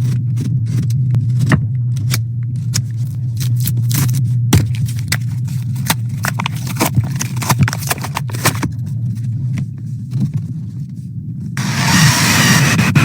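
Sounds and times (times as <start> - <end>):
sharp clicks and scrapes: 0.0 - 8.9, 11.6 - 13.0
steady low hum: 0.0 - 13.0.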